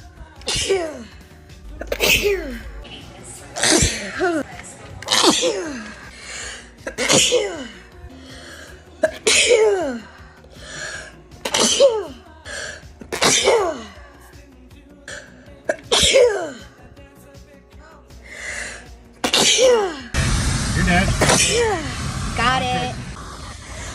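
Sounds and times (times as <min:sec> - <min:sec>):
person sneezing: 0:01.8 - 0:02.7, 0:03.6 - 0:04.4, 0:06.8 - 0:07.7, 0:11.4 - 0:12.2, 0:13.1 - 0:13.9, 0:15.7 - 0:16.6, 0:19.2 - 0:20.1
quick in-breaths: 0:23.4 - 0:23.9.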